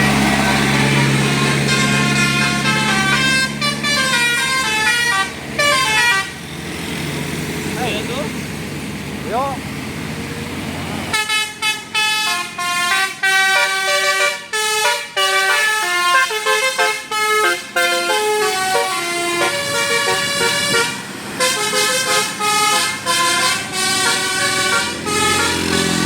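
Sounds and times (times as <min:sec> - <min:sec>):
bus horn playing melody: 0:00.0 - 0:06.5, 0:11.1 - 0:26.0.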